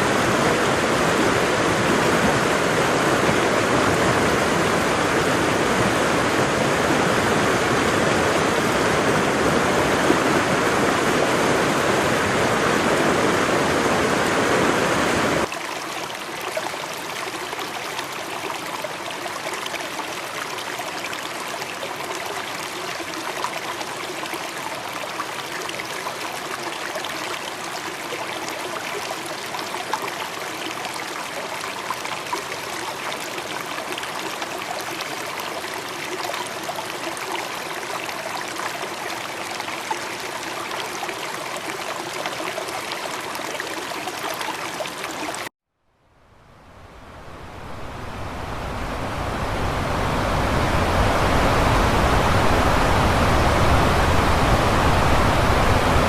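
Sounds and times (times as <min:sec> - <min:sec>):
water splashing and trickling: 0:15.4 - 0:45.5
waterfall rushing: 0:46.8 - 0:56.0.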